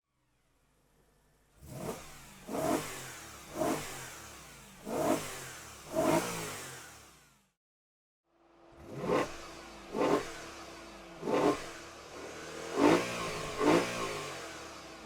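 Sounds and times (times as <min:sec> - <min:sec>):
car engine revving: 0:01.6 - 0:07.0, 0:08.8 - 0:15.0.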